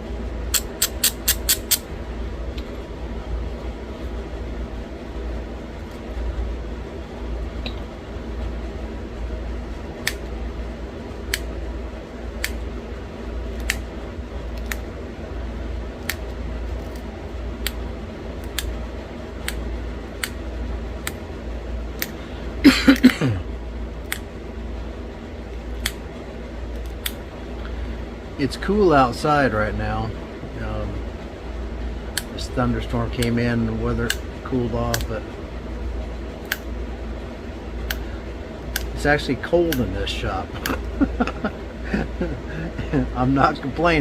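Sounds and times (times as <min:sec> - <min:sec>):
steady low hum: 0:00.0 - 0:44.0
sharp stone flaking clicks: 0:00.5 - 0:01.8.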